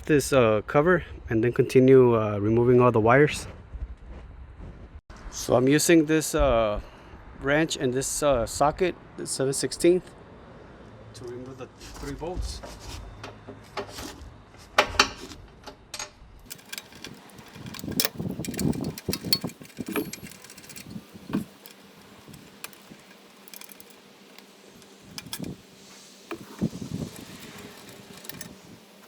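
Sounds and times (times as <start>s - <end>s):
wrench clicking on bolts: 16.5s - 25.7s, 26.3s - 29.0s.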